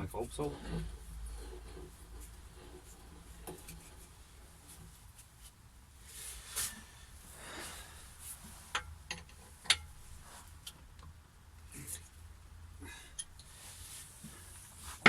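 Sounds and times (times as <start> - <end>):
scraping or rubbing: 0.2 - 6.9.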